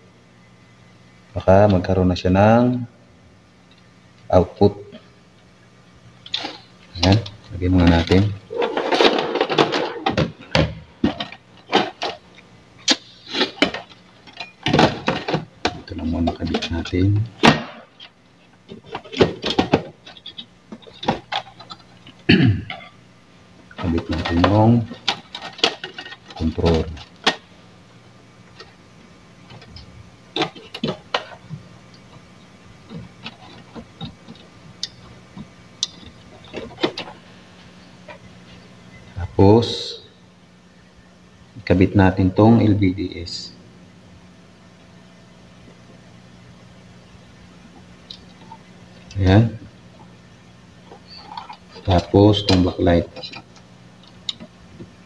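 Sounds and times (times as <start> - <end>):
plastic parts clicking and knocking: 23.8 - 27.4, 30.4 - 31.5.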